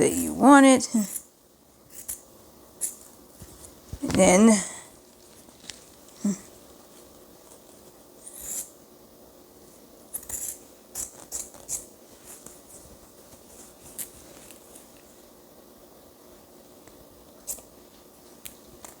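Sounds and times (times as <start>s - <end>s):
scissors snipping fabric: 10.1s - 11.9s.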